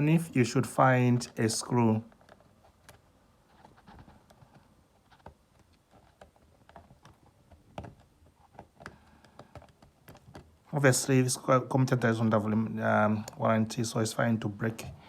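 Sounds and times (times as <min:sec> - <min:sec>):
small tools clicking on laptop: 0:02.1 - 0:10.6.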